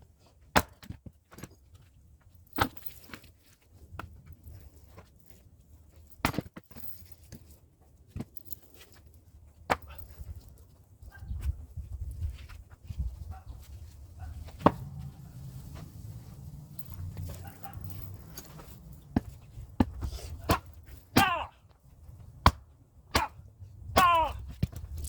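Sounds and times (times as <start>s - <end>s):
axe chopping firewood: 0.5s - 1.0s, 6.2s - 6.5s, 19.1s - 21.5s, 22.4s - 23.4s, 24.0s - 24.9s.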